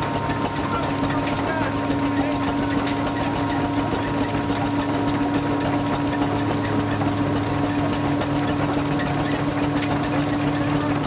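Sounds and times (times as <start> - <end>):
tractor engine running: 0.0 - 11.0.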